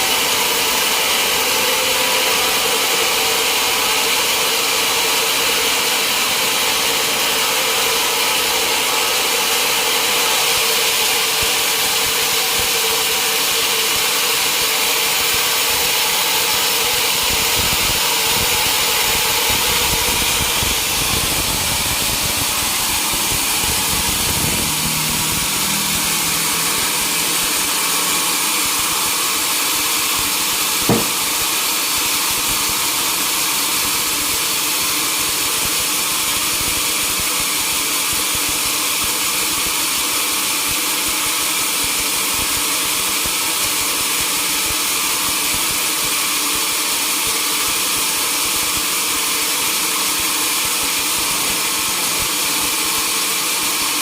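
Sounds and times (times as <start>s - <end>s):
sawmill machinery drone: 0.0s - 54.0s
sharp knock: 30.8s - 31.4s.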